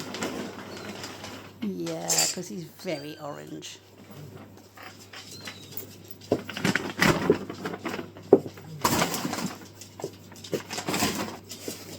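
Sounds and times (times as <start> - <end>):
kittens rustling in a cage: 0.0 - 2.5, 4.0 - 11.9.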